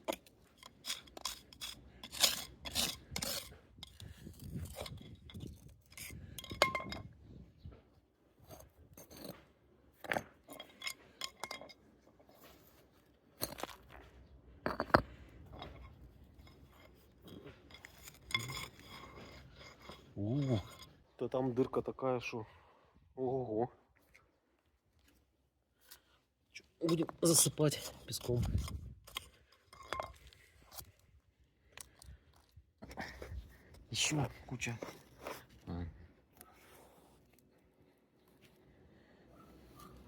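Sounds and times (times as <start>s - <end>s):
concrete tiles clinking and scraping: 0.0s - 7.2s, 8.4s - 21.8s, 26.8s - 35.6s.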